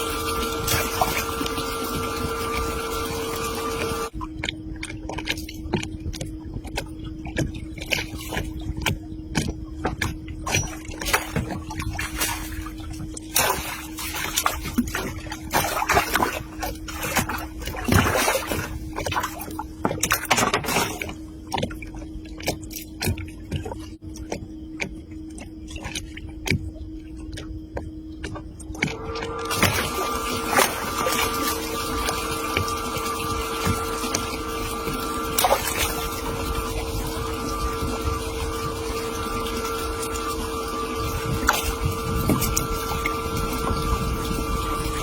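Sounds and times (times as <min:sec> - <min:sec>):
steady low hum: 0:00.0 - 0:45.0
water splashing and sloshing: 0:00.0 - 0:45.0.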